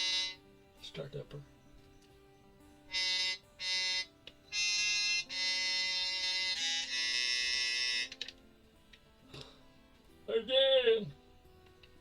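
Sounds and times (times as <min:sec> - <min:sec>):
digital wind instrument notes: 0:00.0 - 0:00.5, 0:02.8 - 0:08.3.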